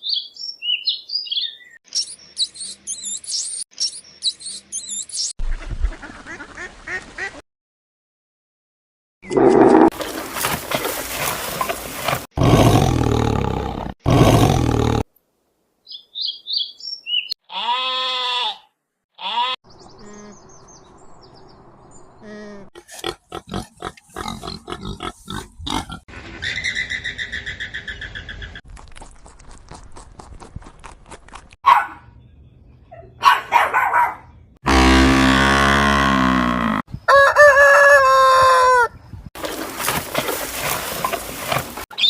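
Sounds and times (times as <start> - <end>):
animal roaring or grunting: 12.4 - 15.1, 22.8 - 26.0, 34.7 - 36.9.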